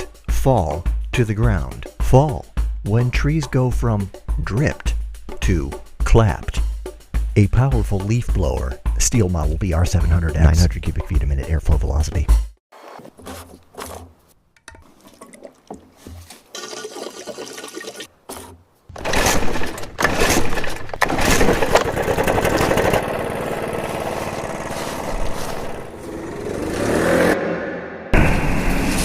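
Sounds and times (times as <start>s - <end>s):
leaf blower engine running: 21.0s - 27.1s.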